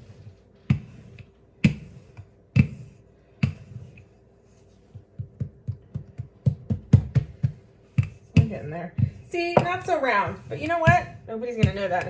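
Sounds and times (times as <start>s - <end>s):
rolling pin knocking on counter: 0.7s - 3.8s, 5.0s - 12.0s.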